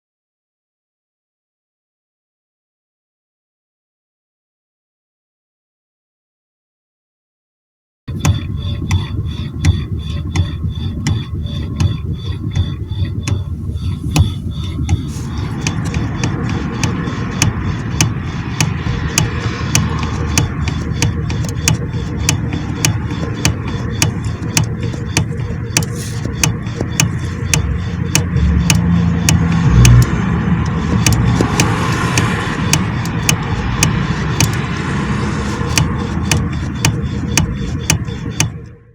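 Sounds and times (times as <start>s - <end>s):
steady rushing noise: 8.1s - 38.4s
steering joint knocking: 8.1s - 38.6s
low vehicle hum: 8.1s - 38.9s.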